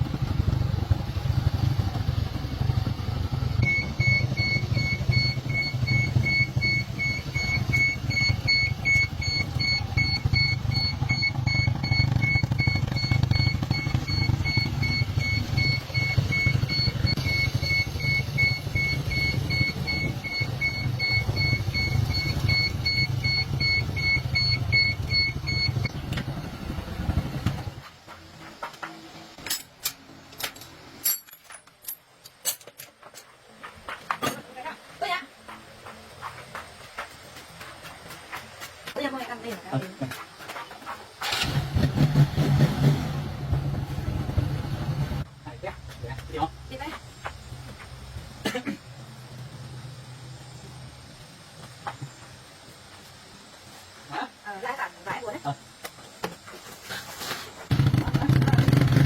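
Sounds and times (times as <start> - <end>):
small motorcycle engine idling: 0.0 - 28.4, 57.6 - 59.0
rapid electronic beeps: 3.6 - 26.0.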